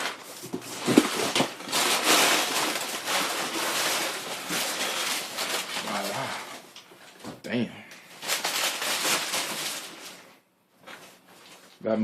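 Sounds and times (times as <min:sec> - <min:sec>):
packaging ripping: 0:00.0 - 0:06.6, 0:08.2 - 0:10.3
packaging rustling and crinkling: 0:00.0 - 0:07.2, 0:08.1 - 0:11.8.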